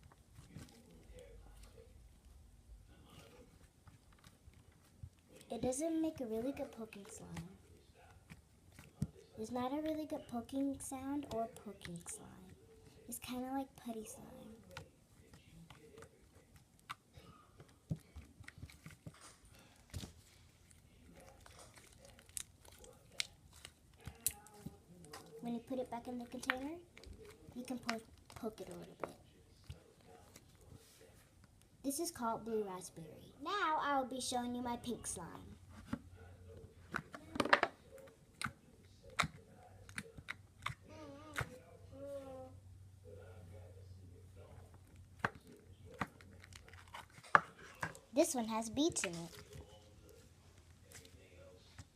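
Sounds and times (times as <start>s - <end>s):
slime clicking and crackling: 13.2s - 30.6s.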